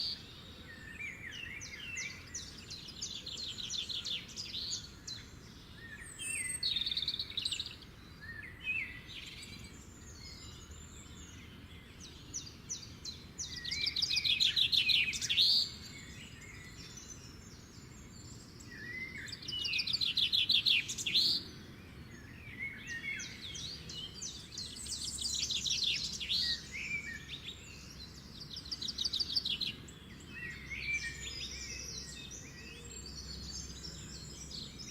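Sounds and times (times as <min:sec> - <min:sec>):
songbirds singing and trilling: 0:00.0 - 0:34.9.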